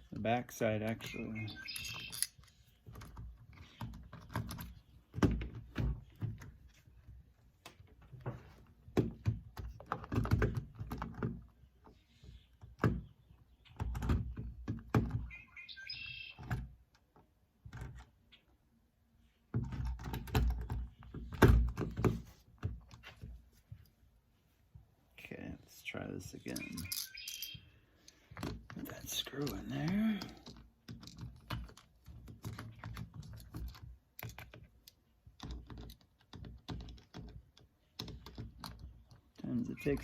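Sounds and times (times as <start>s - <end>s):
metal lock parts clicking: 0.8s - 5.6s, 26.4s - 40.0s.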